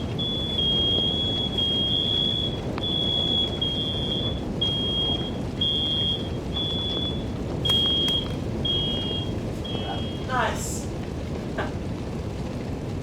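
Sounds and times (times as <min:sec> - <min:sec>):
smoke alarm beeping: 0:00.0 - 0:10.4.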